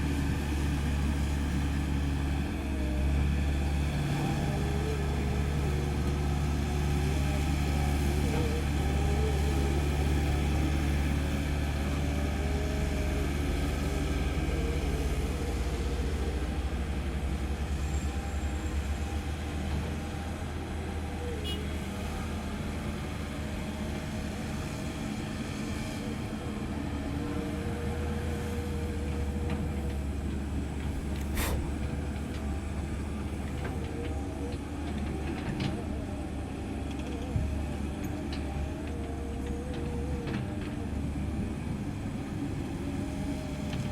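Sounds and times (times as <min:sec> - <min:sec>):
excavator diesel engine running: 0:00.0 - 0:43.9
short hiss: 0:31.1 - 0:31.9.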